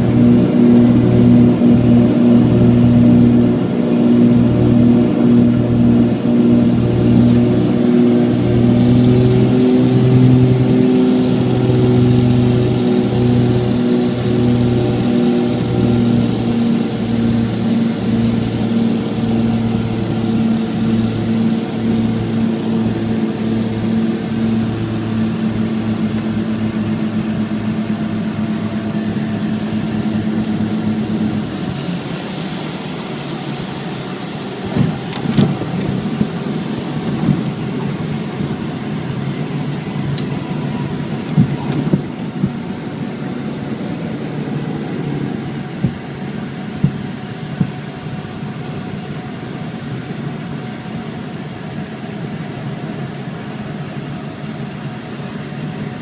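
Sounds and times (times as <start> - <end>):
aircraft engine drone from cabin: 0.0 - 56.0
thumps and rattles: 34.7 - 36.3.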